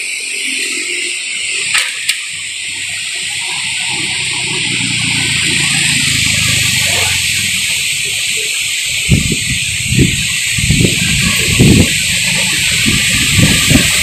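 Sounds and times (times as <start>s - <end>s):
wind gusting through trees: 4.1s - 14.0s.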